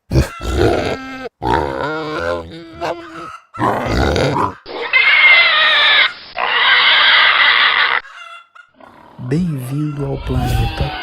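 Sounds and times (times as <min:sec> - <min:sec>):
pigs grunting: 0:00.0 - 0:05.1, 0:08.8 - 0:11.0
high-pitched pig call: 0:00.1 - 0:09.0.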